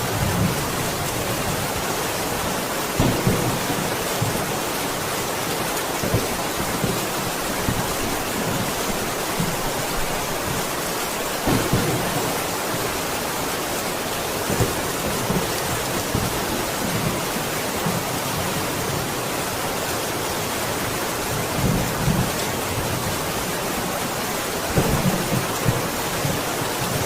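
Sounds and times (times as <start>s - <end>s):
steady rain: 0.0s - 27.0s.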